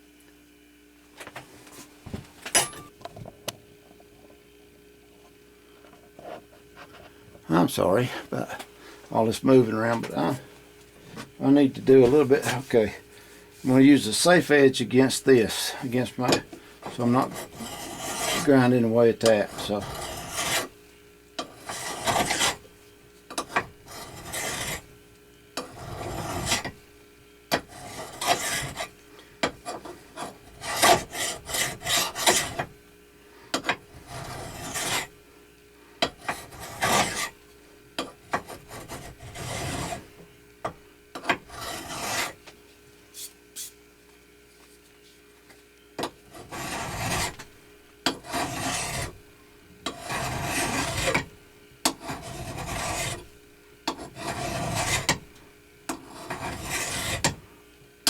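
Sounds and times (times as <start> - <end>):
hand file rasping on metal: 16.9 - 20.7, 21.4 - 22.6, 23.4 - 24.8, 25.6 - 26.8, 27.5 - 32.7, 33.6 - 35.1, 36.0 - 37.4, 38.0 - 40.1, 41.2 - 42.4, 46.3 - 47.5, 48.1 - 49.2, 49.8 - 51.3, 51.9 - 53.3, 53.9 - 55.3, 55.9 - 57.4.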